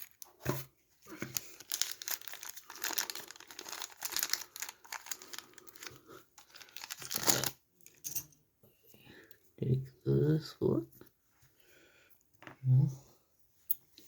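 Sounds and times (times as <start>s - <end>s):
box crinkling and rustling: 0.0s - 7.6s.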